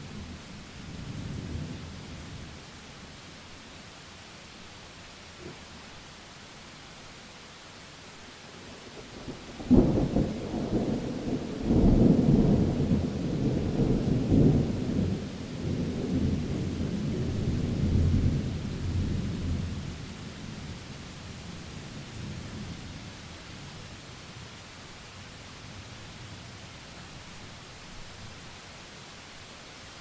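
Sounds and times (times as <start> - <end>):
steady rain: 0.0 - 30.0
thunder crack and rumble: 9.2 - 19.9.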